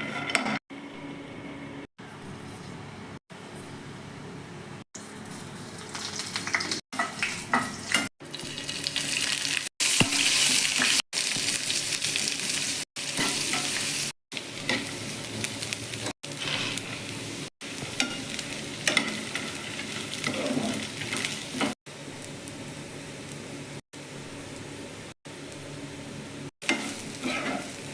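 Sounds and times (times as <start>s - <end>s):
food sizzling in oil: 5.6s - 25.8s, 26.6s - 27.9s.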